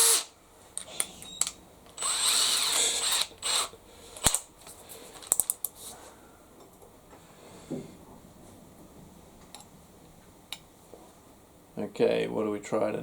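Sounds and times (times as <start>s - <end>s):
drill chuck ratcheting clicks: 0.0s - 4.4s.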